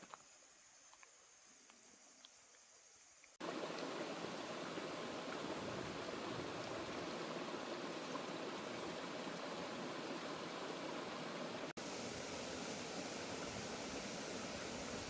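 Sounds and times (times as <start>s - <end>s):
rushing water: 3.4s - 15.0s.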